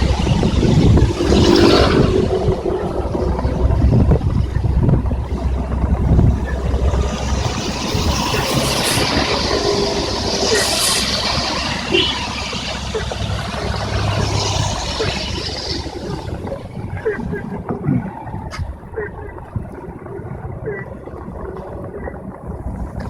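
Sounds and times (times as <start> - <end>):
vehicle engine rumble: 0.0 - 23.0
tyres hissing on wet road: 6.3 - 16.4.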